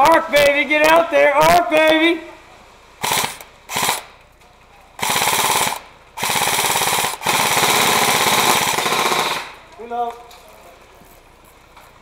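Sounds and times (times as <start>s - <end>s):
airsoft gun firing full auto: 3.0s - 4.1s, 5.0s - 9.6s.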